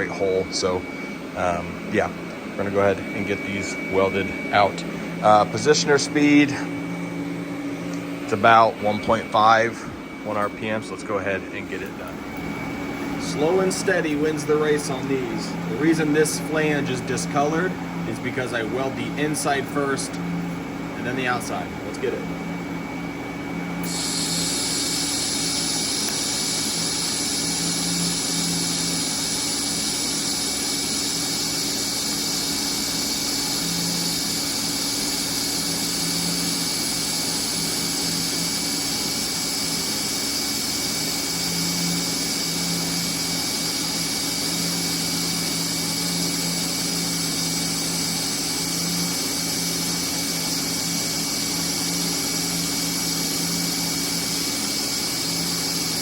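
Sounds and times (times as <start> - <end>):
low electrical hum: 0.0 - 54.5
welding arc hissing: 23.8 - 56.0.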